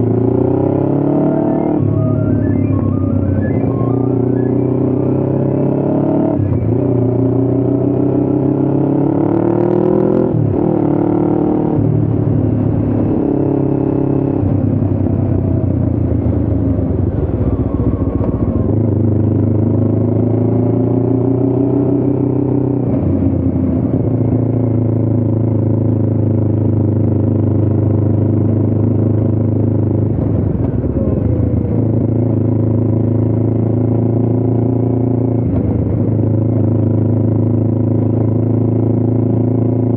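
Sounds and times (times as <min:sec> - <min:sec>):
small motorcycle engine: 0:15.0 - 0:20.8.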